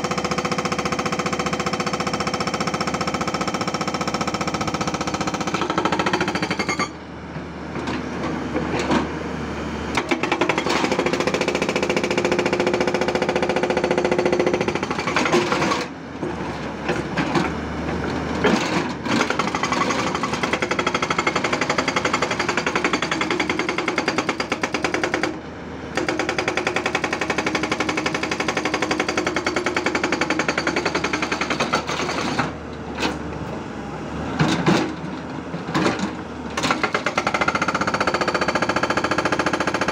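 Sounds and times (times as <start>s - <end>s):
hydraulic rock breaker hammering: 0.0s - 7.0s, 9.9s - 16.0s, 18.4s - 32.6s, 35.7s - 39.9s
excavator diesel engine: 0.0s - 39.9s.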